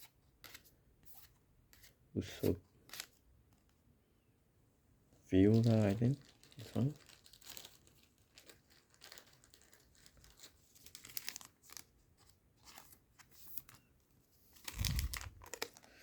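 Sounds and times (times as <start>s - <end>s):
foil wrapper tearing and crinkling: 5.4s - 13.7s, 14.6s - 16.0s.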